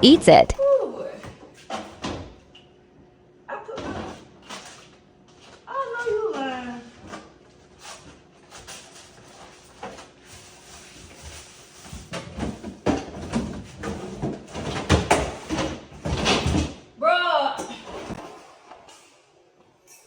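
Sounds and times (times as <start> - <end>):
household knocks and clatter: 11.9 - 16.7.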